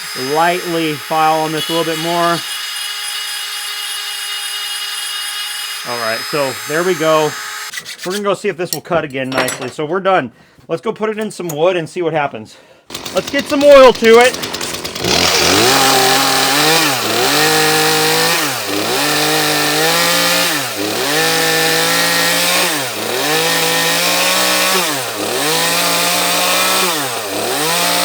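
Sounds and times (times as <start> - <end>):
chainsaw revving: 0.0 - 2.5, 5.8 - 7.7, 12.9 - 28.0.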